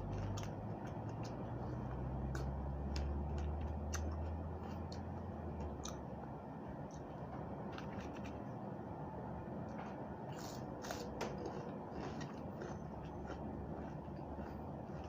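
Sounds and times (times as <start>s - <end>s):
chewing raw vegetables: 0.0s - 6.2s, 9.6s - 15.0s.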